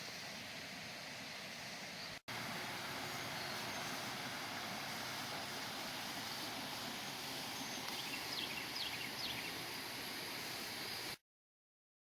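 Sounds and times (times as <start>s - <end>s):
creek rushing: 0.0s - 11.2s
high falling bird chirps: 6.0s - 9.8s.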